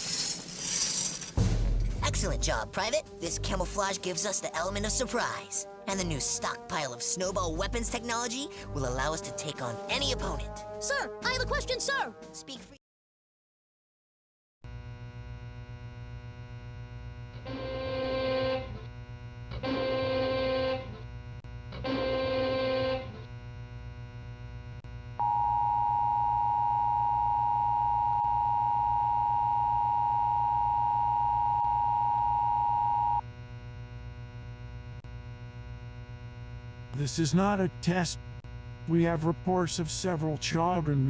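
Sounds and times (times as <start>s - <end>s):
two-tone attention signal: 25.2s - 33.2s
steady electrical hum: 30.0s - 41.0s.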